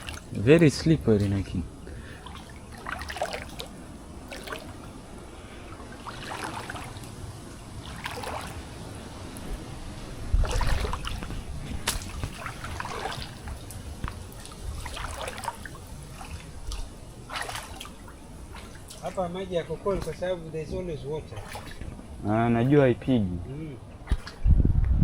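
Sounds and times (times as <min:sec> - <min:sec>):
footsteps splashing in water: 0:00.0 - 0:04.9, 0:05.9 - 0:07.2, 0:07.8 - 0:08.7, 0:10.2 - 0:19.2, 0:21.3 - 0:22.0, 0:24.1 - 0:24.4
shallow water trickling: 0:00.0 - 0:24.5.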